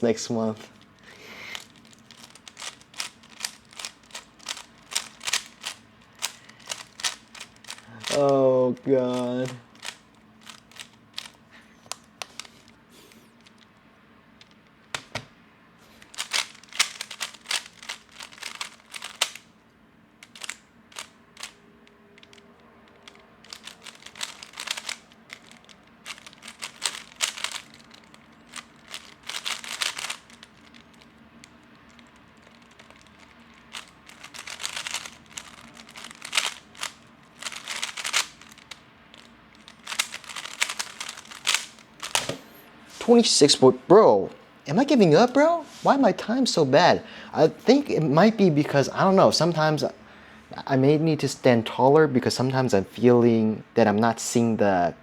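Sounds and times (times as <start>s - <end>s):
speed cube clicking: 0.9s - 8.4s, 9.1s - 12.8s, 16.0s - 19.5s, 20.2s - 21.6s, 22.2s - 42.4s.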